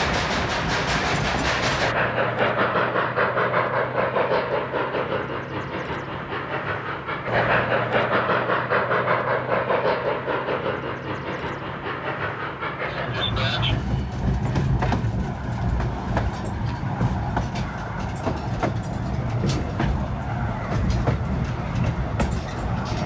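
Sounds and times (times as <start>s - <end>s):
steam train running: 0.0s - 23.0s.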